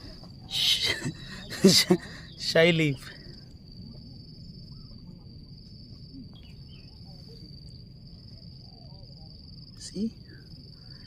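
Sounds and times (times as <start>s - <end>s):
insect trilling: 0.0s - 11.0s
low background rumble: 0.0s - 11.0s.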